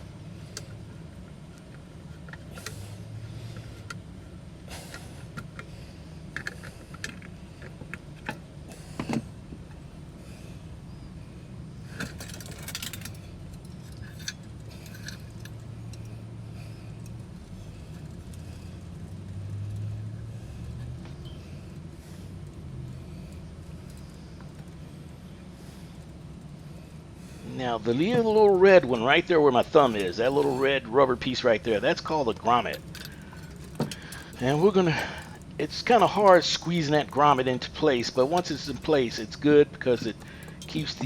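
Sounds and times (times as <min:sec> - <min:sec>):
steady low hum: 0:00.0 - 0:41.0
metal parts and tools clinking: 0:11.9 - 0:16.2, 0:27.6 - 0:41.0.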